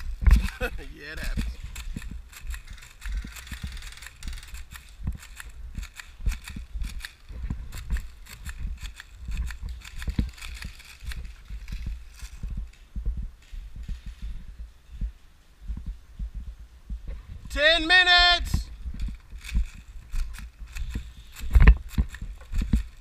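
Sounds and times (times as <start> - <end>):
low rumble: 1.4 - 17.5
irregular knocks and thumps: 5.0 - 17.5.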